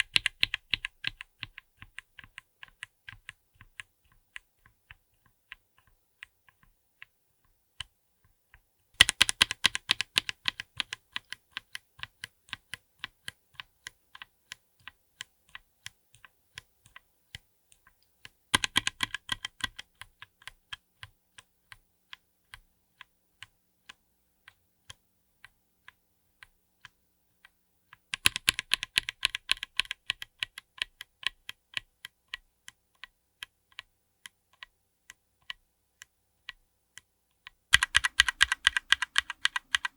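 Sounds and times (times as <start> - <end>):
mechanical keyboard keystrokes: 0.0 - 3.3, 9.0 - 11.8, 18.6 - 20.2, 28.2 - 31.4, 37.7 - 39.9.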